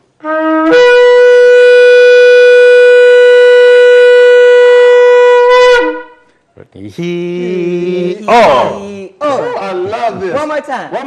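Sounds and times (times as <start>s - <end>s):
shofar blast: 0.2s - 6.4s.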